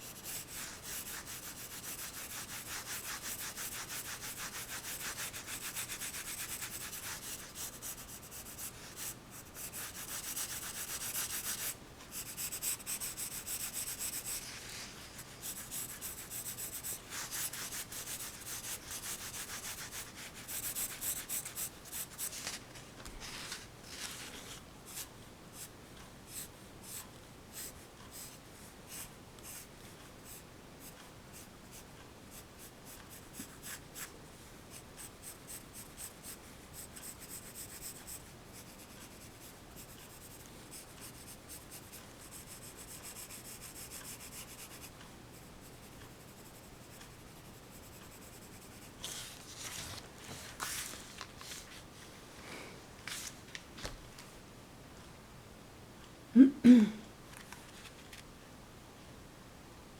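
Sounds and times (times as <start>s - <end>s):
pencil scratching on paper: 0.0s - 22.4s, 26.3s - 34.1s, 34.7s - 49.3s.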